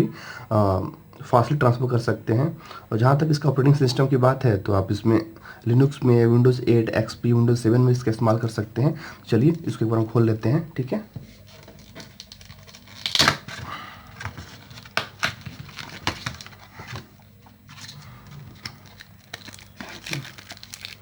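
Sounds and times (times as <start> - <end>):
packaging rustling and crinkling: 11.1 - 21.0
loud sharp packaging rip: 11.7 - 13.6, 18.6 - 21.0.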